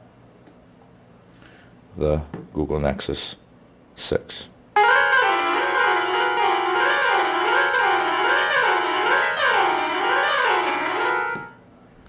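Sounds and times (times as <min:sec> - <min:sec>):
piano notes from phone speakers: 0:04.8 - 0:11.6.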